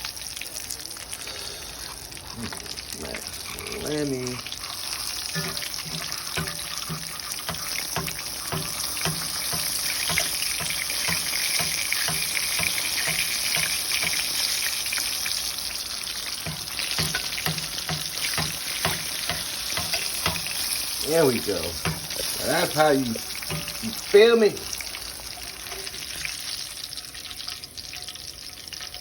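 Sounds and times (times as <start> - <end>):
food sizzling in hot oil: 0.0 - 29.0.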